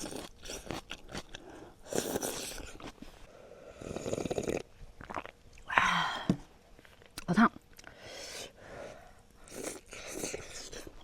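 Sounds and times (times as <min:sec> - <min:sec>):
slurping noodles: 0:01.4 - 0:03.0, 0:03.7 - 0:05.3, 0:09.4 - 0:11.0.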